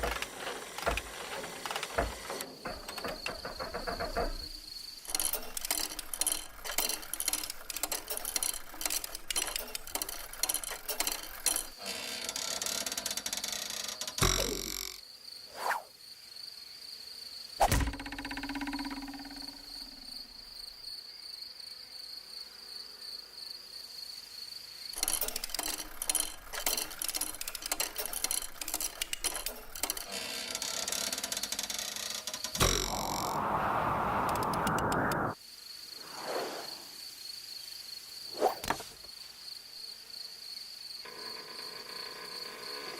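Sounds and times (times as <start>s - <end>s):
rapid clicking and chirring: 0.0s - 15.0s, 25.0s - 33.5s.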